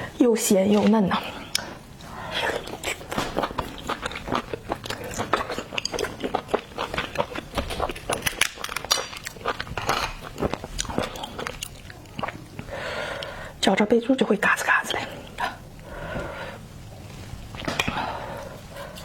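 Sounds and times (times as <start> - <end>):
person chewing crunchy food: 2.3 - 13.4, 17.2 - 19.0.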